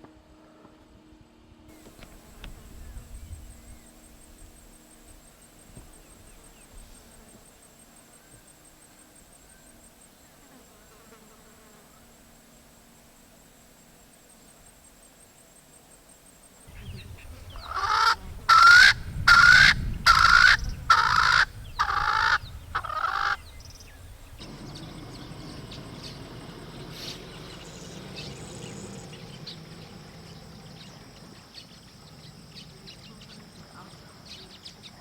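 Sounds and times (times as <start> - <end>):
bush ambience: 1.7 - 35.0
large bird calling: 16.7 - 34.9.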